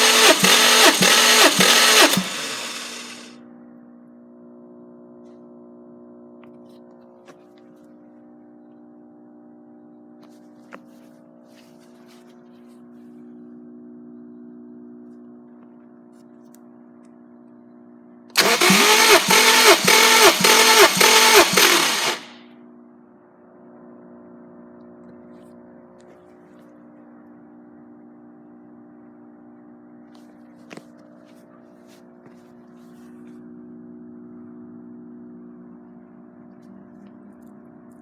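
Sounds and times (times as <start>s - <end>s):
engine starter cranking: 0.0s - 3.3s, 18.4s - 22.4s.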